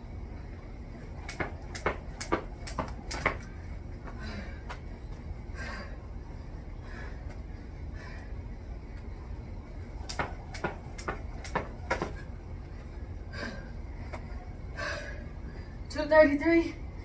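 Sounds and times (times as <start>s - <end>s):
jump rope slapping floor: 1.0s - 4.8s, 9.8s - 12.4s.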